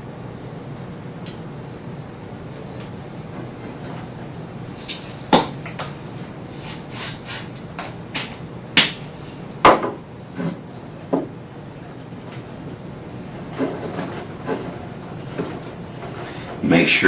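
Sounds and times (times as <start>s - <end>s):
short scraping hisses: 6.5s - 7.5s.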